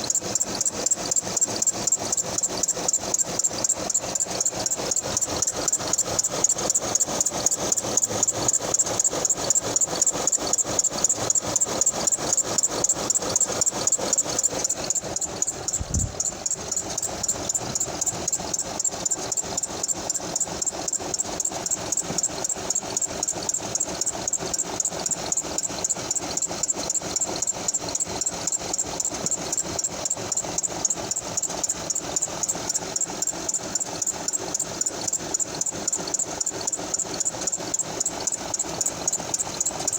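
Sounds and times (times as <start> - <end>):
high-pitched chirping tick: 0.0 - 22.3.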